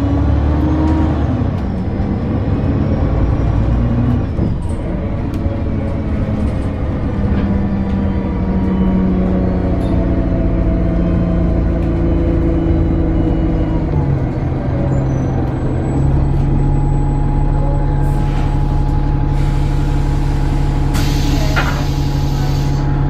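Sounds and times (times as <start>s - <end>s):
bus engine running: 0.0s - 23.0s
air hissing: 19.3s - 22.9s.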